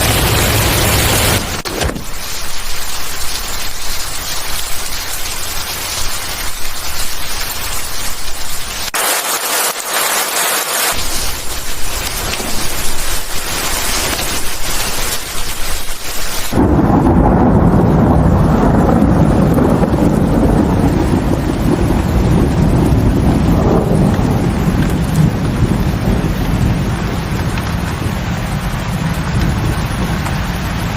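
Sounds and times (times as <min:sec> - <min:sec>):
heavy rain hissing: 0:00.0 - 0:30.9
deep rumble of thunder: 0:11.0 - 0:15.1, 0:16.5 - 0:30.9.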